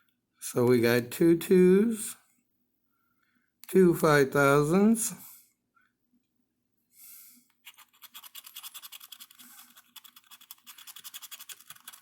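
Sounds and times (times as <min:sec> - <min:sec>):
scratching lottery ticket: 0:07.7 - 0:12.0.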